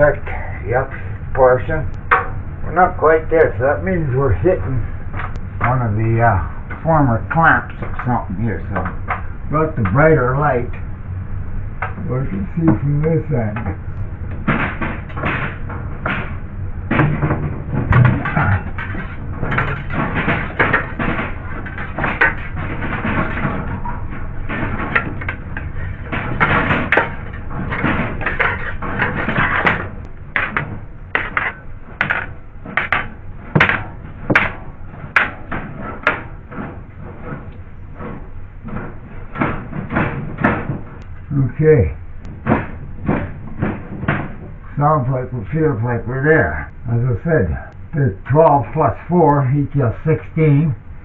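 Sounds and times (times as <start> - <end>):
rod knocking and scraping in ceiling: 14.3 - 41.2, 42.2 - 44.6.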